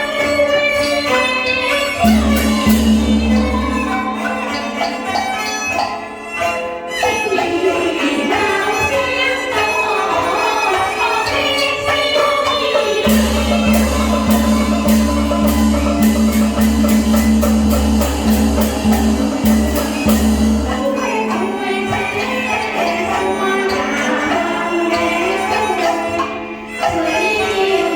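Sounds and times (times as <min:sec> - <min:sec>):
rapid sharp percussion strokes: 0:00.0 - 0:27.9
deep drum: 0:02.0 - 0:05.8, 0:13.1 - 0:21.2
opera singing with accompaniment: 0:20.8 - 0:27.9.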